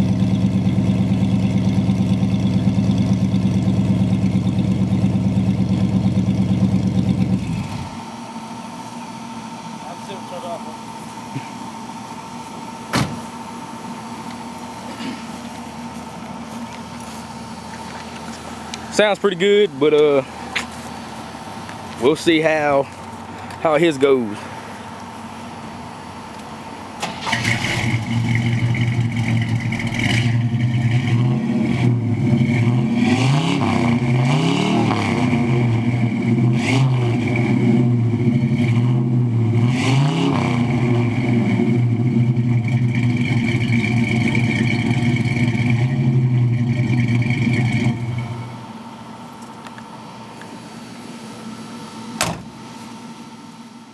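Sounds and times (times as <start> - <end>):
car engine revving: 0.0 - 8.0, 24.8 - 48.9.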